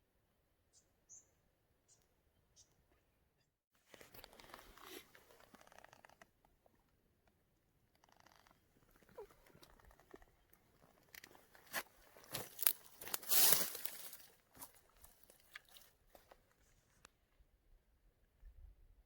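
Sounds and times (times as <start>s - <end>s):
footsteps crunching through dry leaves: 11.6s - 15.3s.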